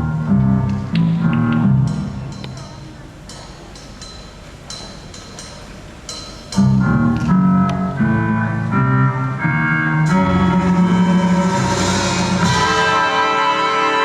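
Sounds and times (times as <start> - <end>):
band playing held chords: 6.5 - 14.0.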